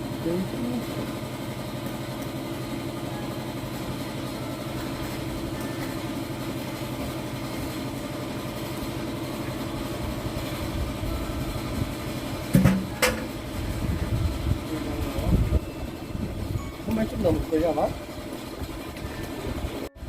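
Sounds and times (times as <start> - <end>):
engine idling: 0.0 - 20.0
sharp knocks: 12.5 - 13.3.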